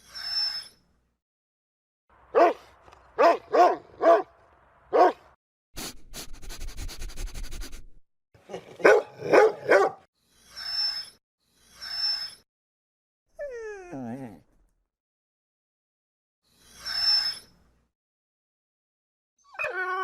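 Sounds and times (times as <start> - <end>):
dog barking: 2.3 - 4.3, 4.9 - 5.2, 8.5 - 10.1.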